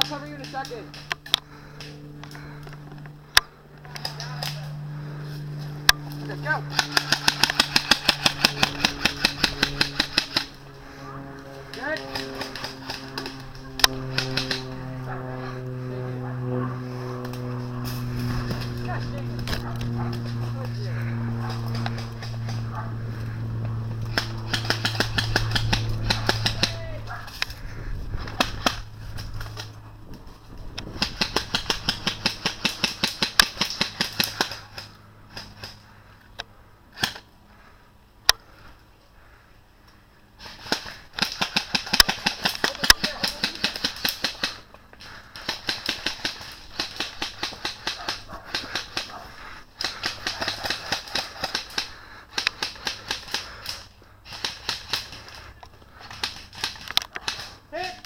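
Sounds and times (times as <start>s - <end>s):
airsoft rifle firing bursts: 6.7s - 10.6s, 24.1s - 27.0s, 31.0s - 34.8s, 40.4s - 44.7s, 45.3s - 49.2s, 49.8s - 57.6s.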